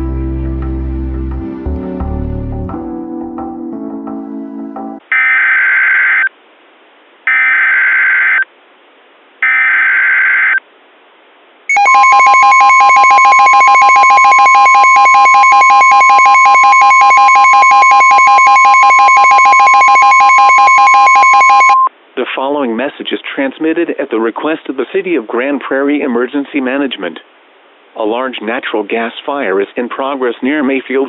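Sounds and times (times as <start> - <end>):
buzzing digital data tones: 11.7 - 21.9
two-tone alert signal: 11.7 - 21.9.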